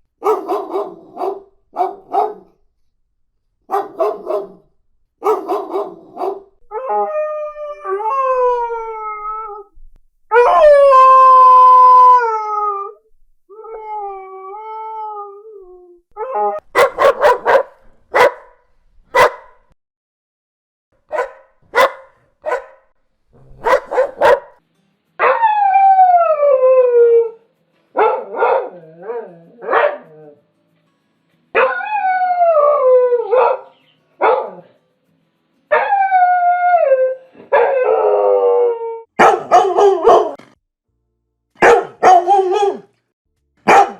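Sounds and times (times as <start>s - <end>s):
dog barking: 0.2s - 2.6s, 3.7s - 6.6s, 16.6s - 19.7s, 21.1s - 22.9s, 23.5s - 24.6s, 28.0s - 28.7s, 29.6s - 30.1s, 33.3s - 34.7s, 39.2s - 40.5s, 41.6s - 42.9s, 43.6s - 43.9s
dog howling: 10.3s - 17.6s, 23.4s - 24.4s, 35.8s - 40.4s.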